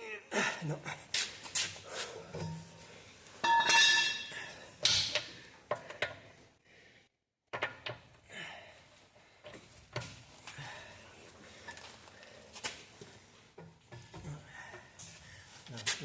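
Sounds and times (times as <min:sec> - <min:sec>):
metal tools clanking: 0:03.4 - 0:05.3.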